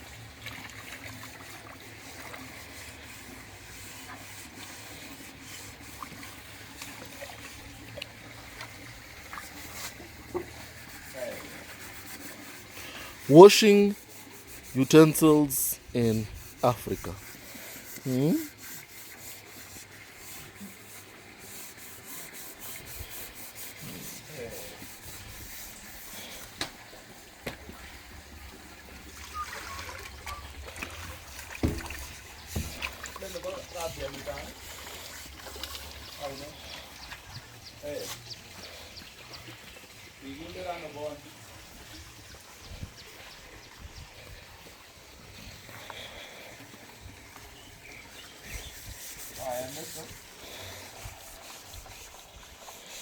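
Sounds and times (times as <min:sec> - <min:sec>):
scrubbing dishes with water: 0:00.0 - 0:44.4, 0:45.3 - 0:53.0
scourer scrubbing dishes: 0:09.3 - 0:15.6, 0:16.3 - 0:26.5, 0:29.3 - 0:35.5
sharp knocks: 0:31.6 - 0:33.0.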